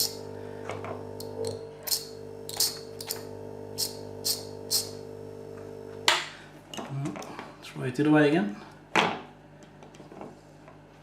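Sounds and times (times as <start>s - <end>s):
electric motor humming: 0.0s - 6.1s.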